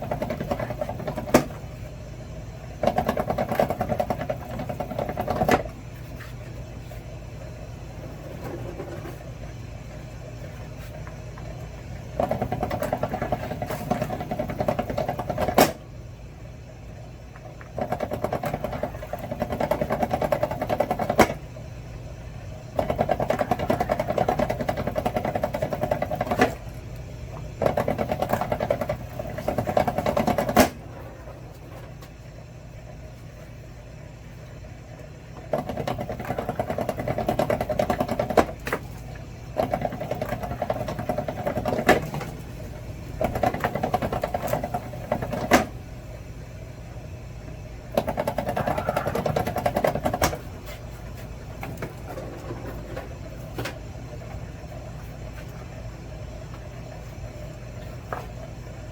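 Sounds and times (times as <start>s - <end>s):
steady low hum: 0.0s - 58.9s
wire stripping machine running: 47.8s - 50.7s.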